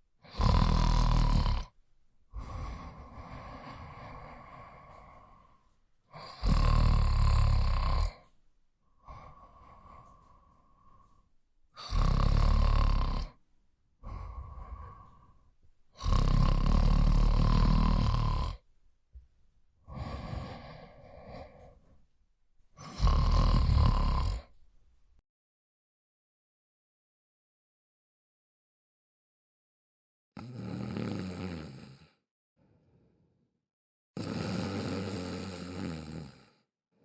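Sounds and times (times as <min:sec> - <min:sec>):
person snoring: 0:00.2 - 0:13.4, 0:14.0 - 0:18.7, 0:19.8 - 0:22.0, 0:22.8 - 0:24.6, 0:30.4 - 0:33.4, 0:34.2 - 0:36.7
quiet breath: 0:01.6 - 0:23.1, 0:31.9 - 0:33.5.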